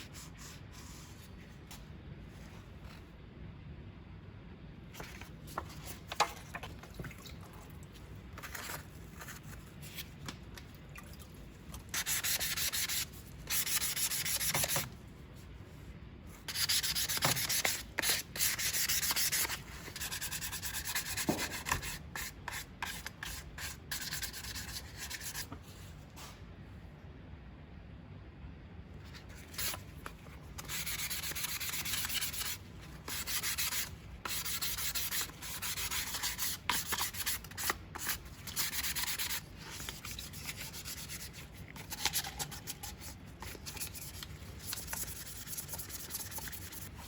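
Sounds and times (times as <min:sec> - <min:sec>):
sandpaper rubbing: 0:12.0 - 0:14.8, 0:16.5 - 0:25.4, 0:30.6 - 0:47.0.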